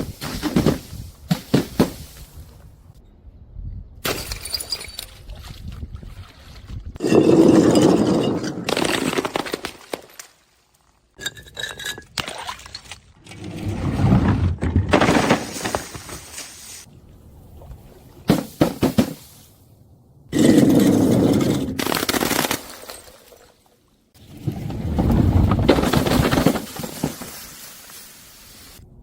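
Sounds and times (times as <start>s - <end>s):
glass bottles breaking: 4.0s - 5.1s, 7.0s - 10.3s, 21.4s - 23.5s.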